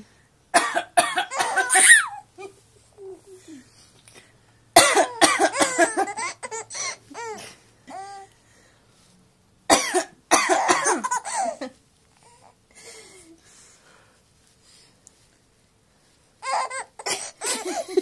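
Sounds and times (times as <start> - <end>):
woman coughing: 0.6 - 2.0, 4.8 - 6.2, 9.7 - 11.6, 17.0 - 18.0
baby laughing and squealing: 1.4 - 2.3, 16.4 - 18.0.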